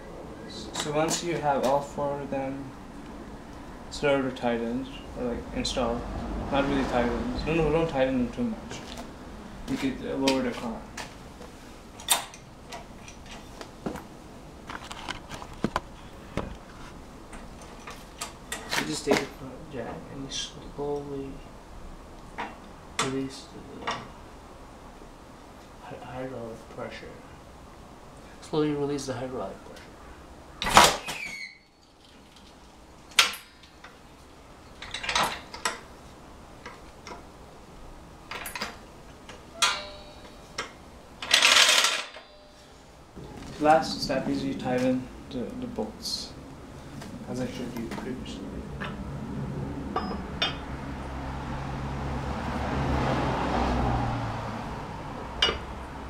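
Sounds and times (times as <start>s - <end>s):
sharp click with ringing: 39.6s - 40.8s
metal clanks and knocks: 39.6s - 42.5s, 55.4s - 55.7s.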